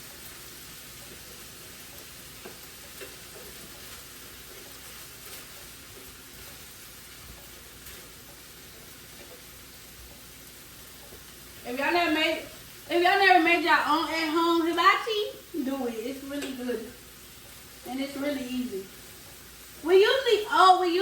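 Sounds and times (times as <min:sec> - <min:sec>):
steak sizzling in a pan: 0:00.0 - 0:21.0.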